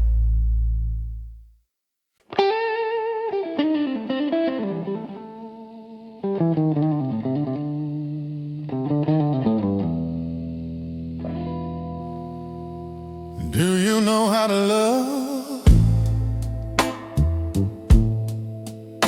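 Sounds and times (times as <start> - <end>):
bass: 0.0 - 1.6, 15.7 - 18.7
electric guitar with effects: 2.2 - 14.0, 15.6 - 19.0
blues music: 2.3 - 19.0.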